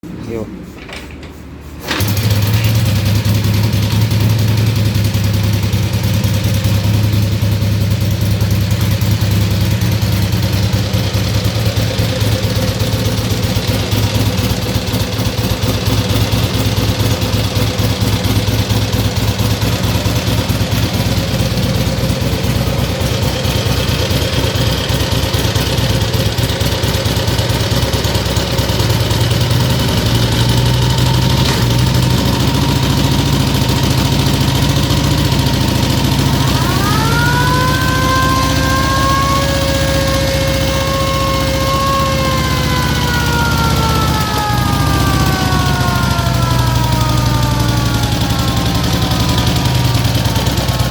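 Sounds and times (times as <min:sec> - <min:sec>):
siren winding up: 0:01.8 - 0:50.9
motorcycle engine idling: 0:01.9 - 0:50.9.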